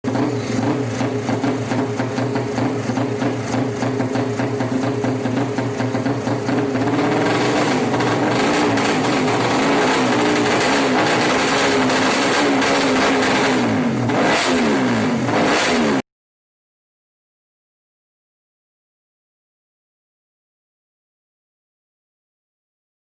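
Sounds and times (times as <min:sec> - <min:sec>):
race engine running: 0:00.0 - 0:16.0.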